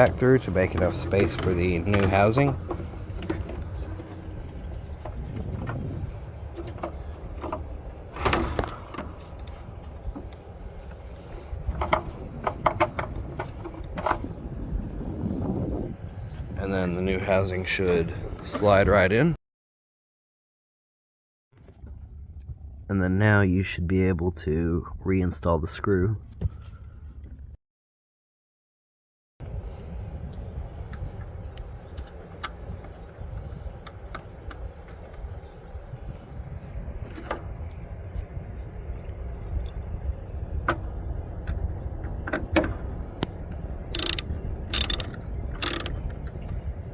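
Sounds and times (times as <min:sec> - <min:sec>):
low outdoor rumble: 0:00.0 - 0:19.3, 0:21.6 - 0:27.6, 0:29.4 - 0:46.9
light clicks: 0:44.0 - 0:46.0.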